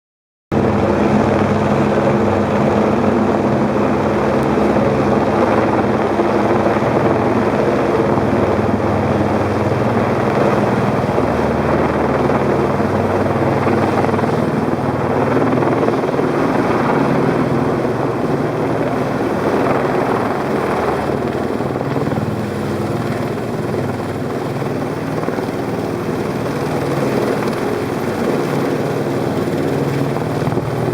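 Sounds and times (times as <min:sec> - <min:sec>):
helicopter rotor and engine: 0:00.5 - 0:30.9.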